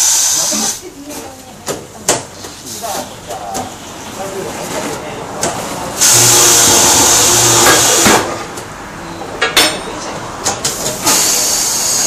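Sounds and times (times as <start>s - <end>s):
compressed-air tool hissing: 0.0s - 0.8s, 6.0s - 8.0s, 11.0s - 12.0s.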